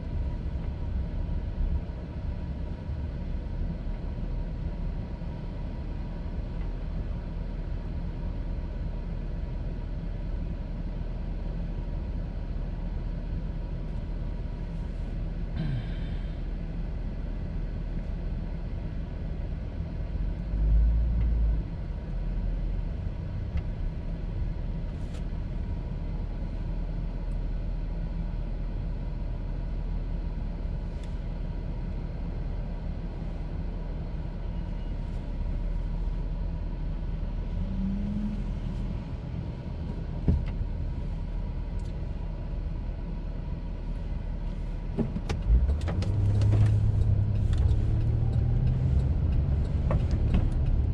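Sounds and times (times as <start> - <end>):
car engine running: 21.2 - 50.9.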